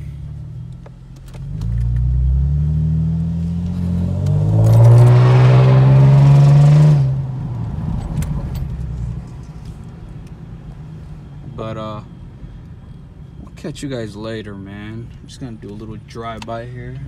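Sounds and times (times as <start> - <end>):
car exhaust accelerating: 0.0 - 9.3.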